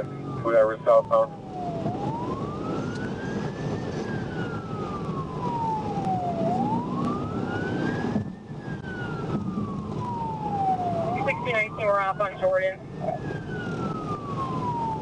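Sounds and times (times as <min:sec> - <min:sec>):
police siren wailing: 0:00.0 - 0:15.0
vehicle and road noise: 0:00.0 - 0:15.0.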